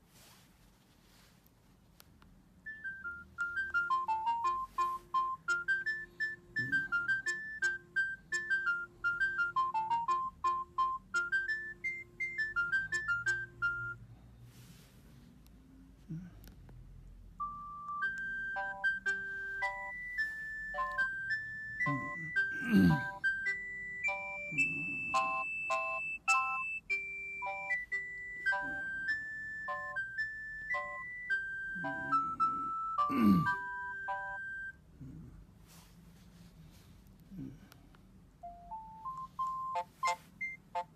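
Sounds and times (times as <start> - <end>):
phone ringtone beeping melody: 2.7 - 14.0, 17.4 - 34.8, 38.4 - 40.9.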